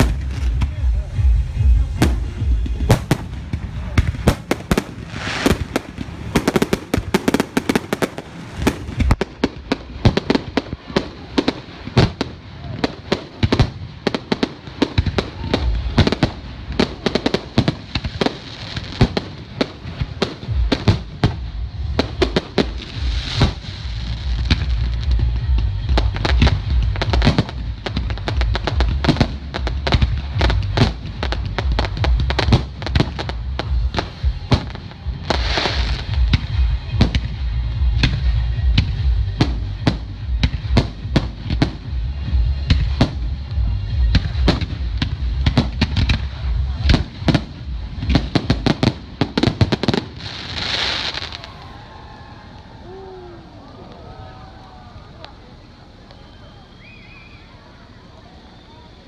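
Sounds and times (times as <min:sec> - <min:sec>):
deep rumble of explosions: 0:00.0 - 0:57.3
fireworks bangs and crackles: 0:00.0 - 0:59.0.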